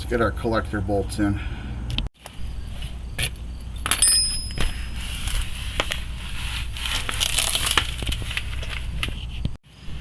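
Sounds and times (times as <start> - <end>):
tools and bolts clinking on metal: 3.8 - 5.0.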